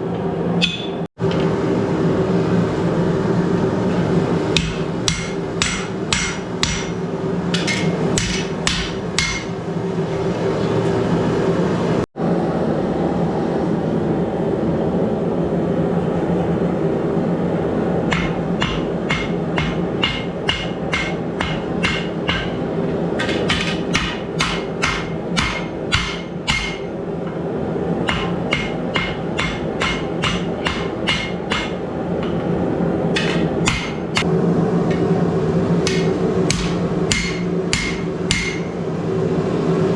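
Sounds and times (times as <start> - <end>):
steady droning hum: 0.0 - 39.9
hammer striking steel on anvil: 0.6 - 1.0, 4.6 - 9.6, 18.1 - 27.4, 28.0 - 32.5, 33.1 - 34.3, 35.8 - 38.8.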